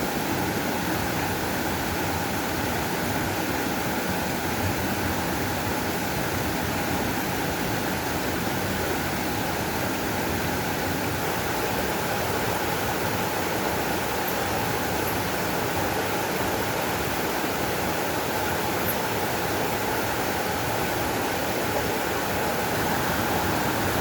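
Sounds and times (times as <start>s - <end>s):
water rushing: 10.8s - 24.0s.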